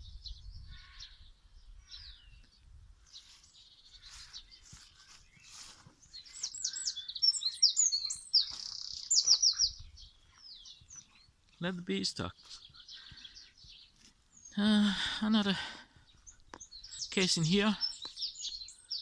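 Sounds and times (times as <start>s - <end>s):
small songbirds singing: 0.0s - 19.0s.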